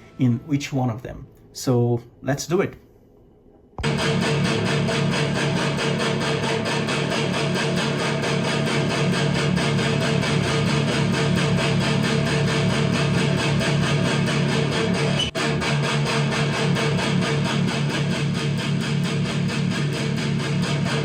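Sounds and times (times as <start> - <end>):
distorted electric guitar: 3.8 - 21.0.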